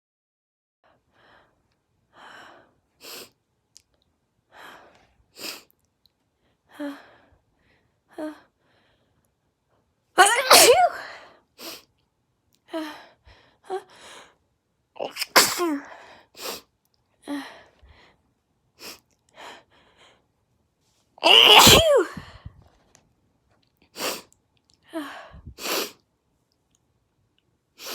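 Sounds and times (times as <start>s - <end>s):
person sneezing: 10.2s - 11.1s, 15.0s - 15.9s, 21.2s - 22.2s.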